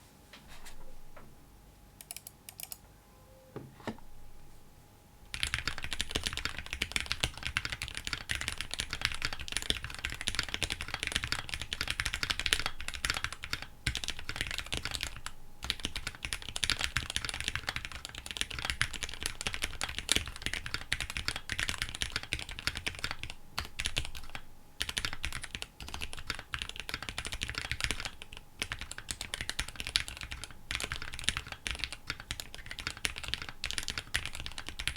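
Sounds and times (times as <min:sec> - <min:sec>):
fast mechanical keyboard typing: 0:05.3 - 0:34.9.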